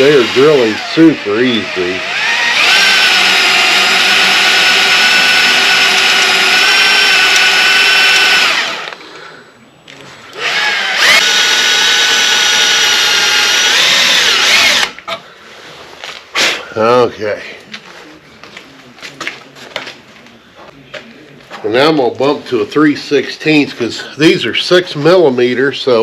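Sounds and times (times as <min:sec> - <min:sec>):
electric drill whining through metal: 0:00.0 - 0:09.0, 0:10.4 - 0:15.0.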